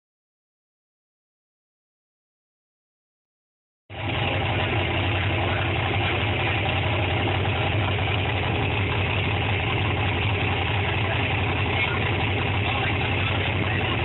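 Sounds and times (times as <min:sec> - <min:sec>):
truck engine idling: 0:03.9 - 0:14.0.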